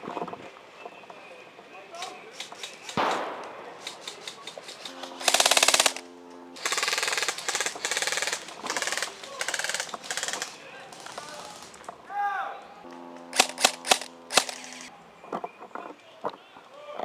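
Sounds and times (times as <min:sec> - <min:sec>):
single sharp crack: 0:02.9 - 0:04.5
airsoft guns firing rapid bursts: 0:03.8 - 0:06.0, 0:06.6 - 0:11.7, 0:13.3 - 0:14.9
steady whine: 0:12.7 - 0:15.2.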